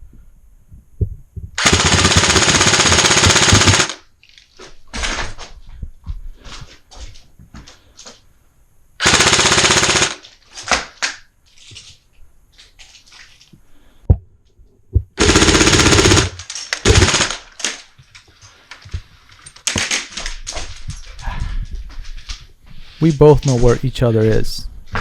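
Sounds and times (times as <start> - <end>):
airsoft rifle full-auto bursts: 1.6 - 4.1, 9.0 - 10.3, 15.2 - 17.8.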